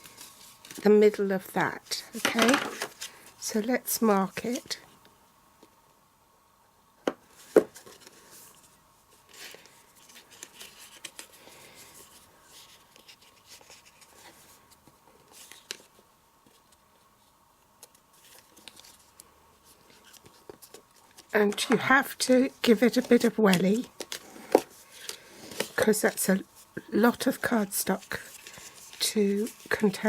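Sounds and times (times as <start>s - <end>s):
card rustling and creasing: 2.1s - 3.4s, 7.3s - 30.0s.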